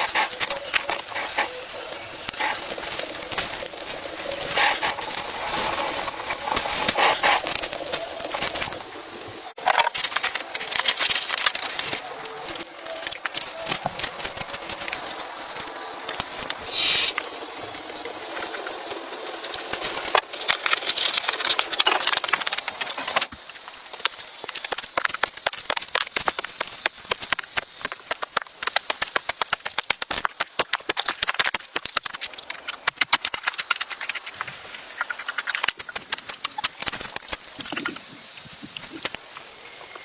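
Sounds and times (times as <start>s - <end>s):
rustling or scraping: 0.0s - 8.9s, 9.6s - 17.1s.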